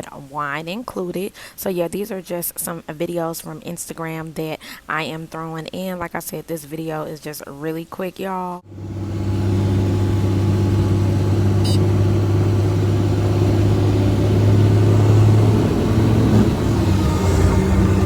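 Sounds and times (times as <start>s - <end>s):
helicopter engine and rotor hum: 8.7s - 18.0s.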